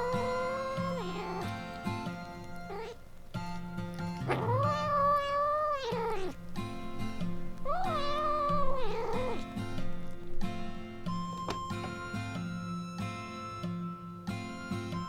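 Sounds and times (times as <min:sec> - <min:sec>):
kitten meowing: 0:00.0 - 0:10.3.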